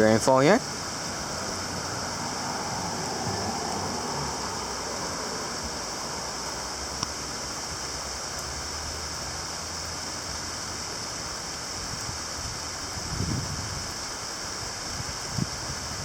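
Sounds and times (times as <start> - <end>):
heavy rain pouring: 0.0 - 16.0
sharp tick: 7.0 - 7.2.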